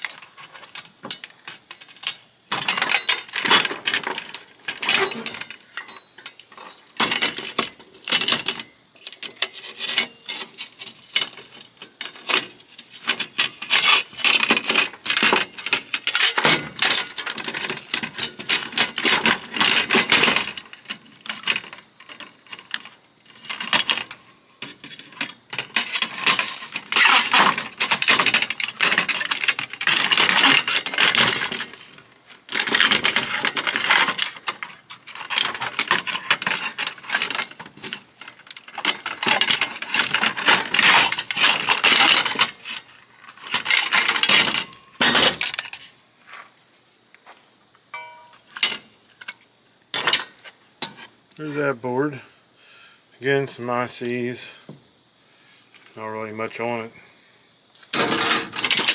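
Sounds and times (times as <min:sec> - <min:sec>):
small metal parts clinking: 0:01.1 - 0:24.2, 0:24.8 - 0:31.8, 0:32.5 - 0:45.9, 0:48.0 - 0:50.4, 0:57.9 - 0:58.9.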